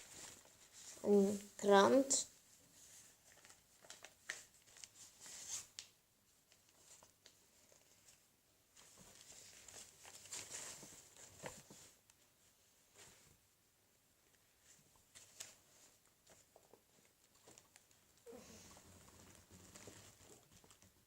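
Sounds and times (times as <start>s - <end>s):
newspaper rustling and crinkling: 0.0s - 1.5s, 2.6s - 12.1s, 19.0s - 21.0s.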